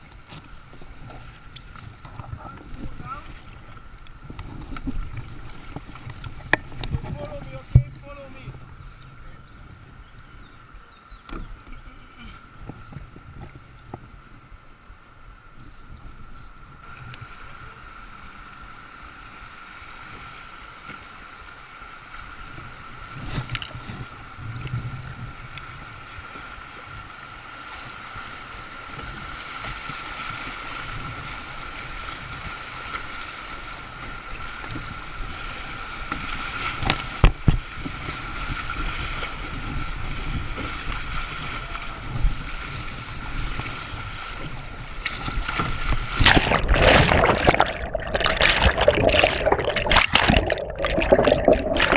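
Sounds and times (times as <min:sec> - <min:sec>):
river water rushing and splashing: 0:43.2 - 0:51.9.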